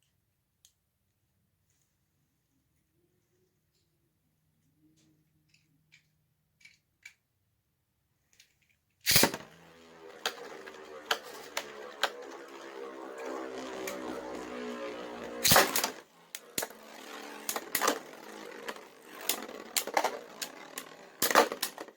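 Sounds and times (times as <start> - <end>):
spinning tops clacking: 9.1 - 21.9
spinning tops whirring hum: 9.1 - 21.9.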